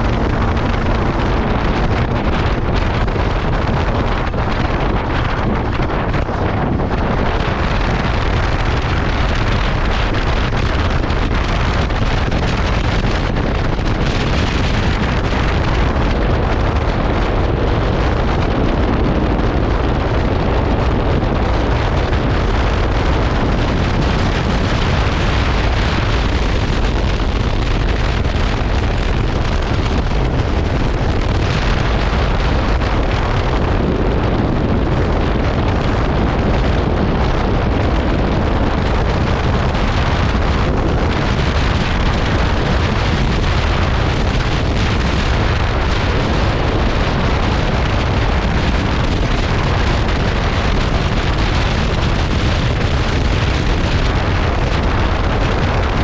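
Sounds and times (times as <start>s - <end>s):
motorcycle engine running: 0.0s - 36.1s
wind buffeting microphone: 0.0s - 56.0s.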